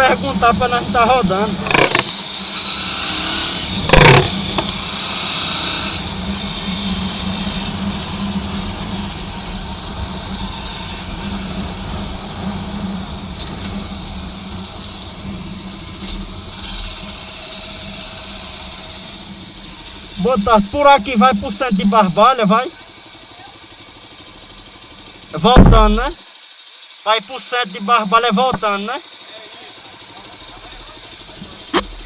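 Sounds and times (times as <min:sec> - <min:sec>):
motorcycle engine running: 0:00.0 - 0:27.0, 0:28.0 - 0:32.0
loud thump: 0:03.9 - 0:04.8, 0:25.5 - 0:26.2.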